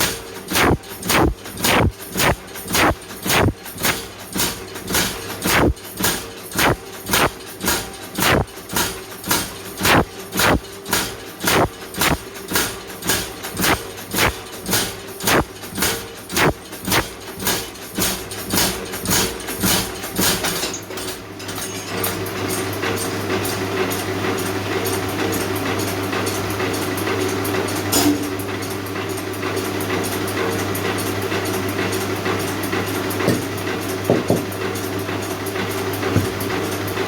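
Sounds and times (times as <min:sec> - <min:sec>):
machine hum: 0:00.0 - 0:04.0, 0:05.4 - 0:05.8, 0:06.5 - 0:07.3, 0:08.2 - 0:08.5, 0:09.8 - 0:10.6, 0:11.5 - 0:12.2, 0:13.6 - 0:14.4, 0:15.3 - 0:15.5, 0:16.4 - 0:17.0
faint fast ticking: 0:00.6 - 0:04.0, 0:05.5 - 0:05.8, 0:06.6 - 0:07.3, 0:08.2 - 0:08.5, 0:09.9 - 0:10.6, 0:11.5 - 0:12.2.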